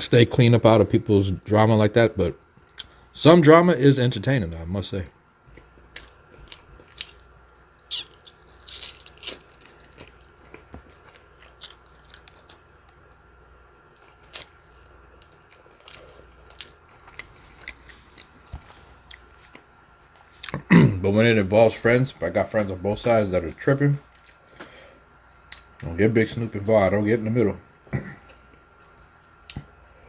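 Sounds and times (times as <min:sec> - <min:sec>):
person chewing food: 0:05.4 - 0:20.7, 0:24.1 - 0:24.7.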